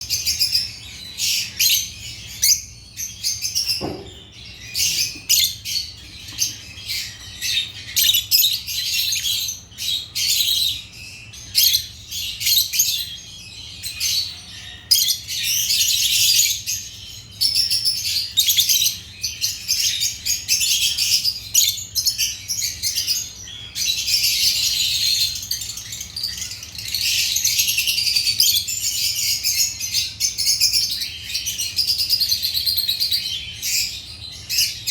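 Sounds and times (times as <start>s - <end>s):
lovebirds chirping: 0.0s - 34.9s
short thump: 3.8s - 4.3s.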